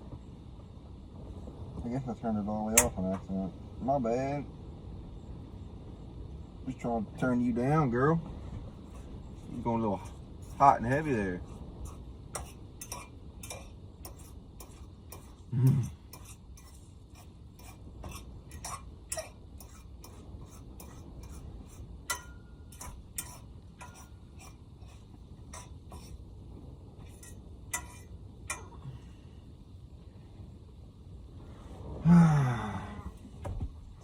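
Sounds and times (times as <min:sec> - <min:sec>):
eggs frying in a pan: 0:04.9 - 0:30.2.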